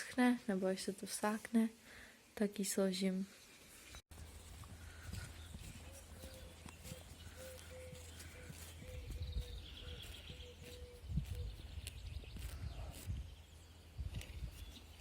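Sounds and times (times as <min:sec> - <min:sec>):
hoof thuds: 0:04.1 - 0:11.3
bird trilling: 0:05.9 - 0:11.4.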